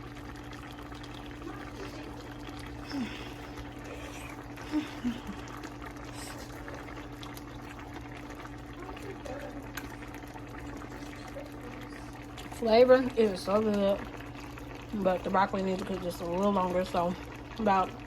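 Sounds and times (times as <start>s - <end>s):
low electrical hum: 0.0s - 18.0s
stir fry bubbling in pan: 0.0s - 18.0s
low voice humming: 2.2s - 6.9s.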